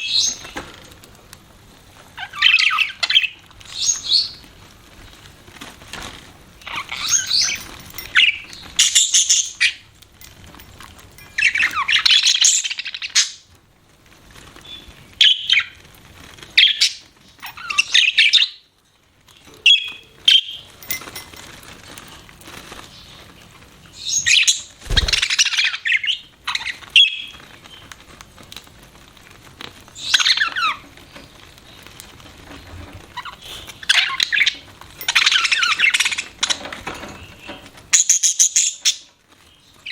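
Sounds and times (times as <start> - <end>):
budgerigars chirping: 11.3 - 13.4, 17.6 - 18.6, 24.0 - 27.4, 30.0 - 30.8, 33.2 - 36.6, 38.0 - 39.1.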